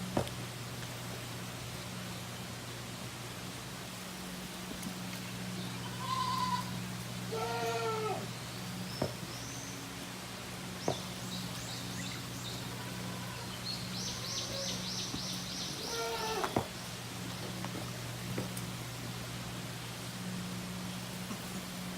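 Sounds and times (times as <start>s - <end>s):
steady low hum: 0.0s - 21.9s
goat kid bleating: 5.8s - 8.3s, 12.6s - 14.8s, 15.8s - 16.6s.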